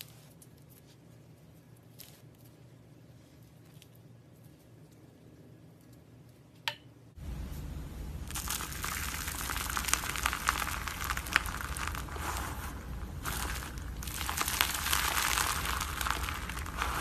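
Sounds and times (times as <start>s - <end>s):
slime crackling and popping: 8.2s - 17.0s.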